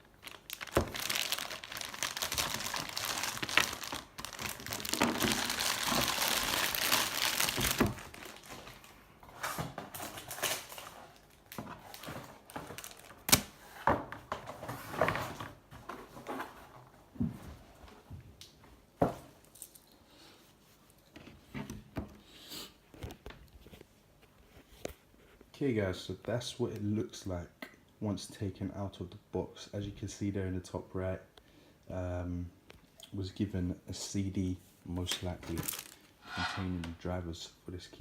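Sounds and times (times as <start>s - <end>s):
packaging crinkling and rustling: 0.0s - 13.6s, 35.1s - 36.1s.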